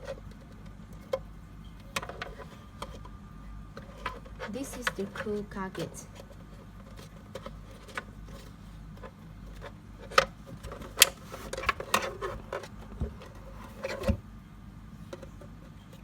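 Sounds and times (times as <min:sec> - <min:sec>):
compressor handling clicks and rubbing: 0:03.8 - 0:14.2.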